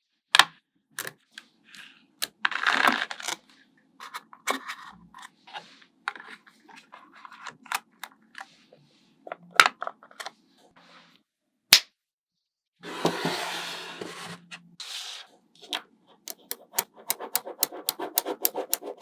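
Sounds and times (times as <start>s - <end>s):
magnetic balls clicking together: 16.3s - 19.0s.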